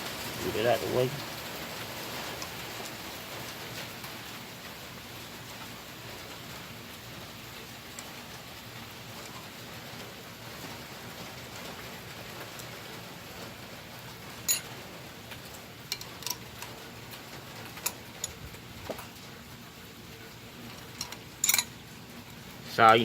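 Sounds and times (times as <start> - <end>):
steady rain-like hiss: 0.0 - 23.0
hand tools clinking: 14.4 - 14.8, 15.4 - 16.8, 17.6 - 19.2, 20.7 - 21.8.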